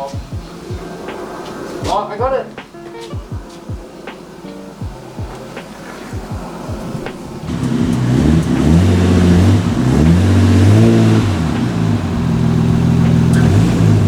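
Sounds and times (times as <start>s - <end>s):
car engine revving: 5.0s - 14.0s.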